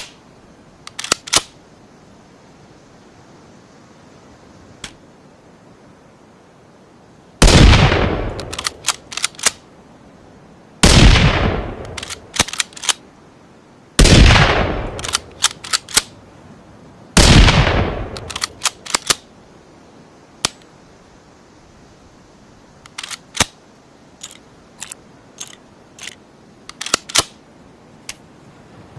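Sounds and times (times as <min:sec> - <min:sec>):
sharp rifle clicks: 0:00.8 - 0:01.6, 0:07.4 - 0:09.6, 0:10.8 - 0:13.0, 0:14.0 - 0:16.2, 0:17.2 - 0:19.3, 0:22.8 - 0:23.6, 0:24.2 - 0:27.4
rifle shots: 0:07.4 - 0:09.6, 0:10.8 - 0:12.8, 0:14.0 - 0:16.1, 0:17.2 - 0:19.2.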